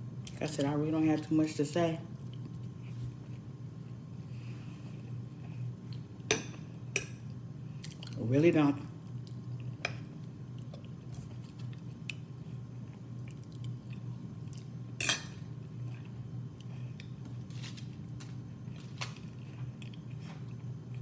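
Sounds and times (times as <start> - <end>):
low steady hum: 0.0 - 21.0
cutlery and dishes clinking: 15.0 - 15.4.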